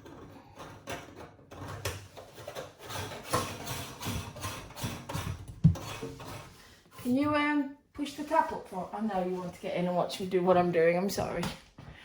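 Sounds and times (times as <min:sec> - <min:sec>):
clicks and scrapes of metal parts: 0:00.0 - 0:06.6.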